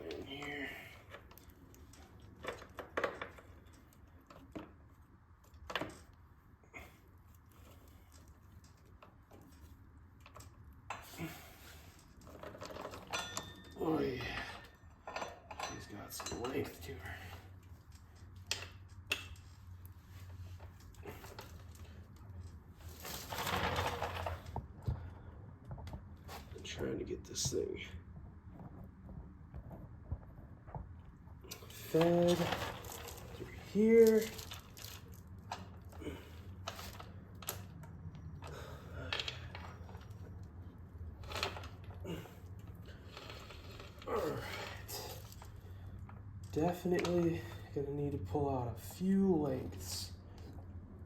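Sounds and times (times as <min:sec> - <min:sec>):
metal chain clicking: 0:10.3 - 0:19.6
metal chain links clinking: 0:11.0 - 0:18.2, 0:31.6 - 0:37.6
chain rustling scrape: 0:31.5 - 0:37.2, 0:41.2 - 0:45.9.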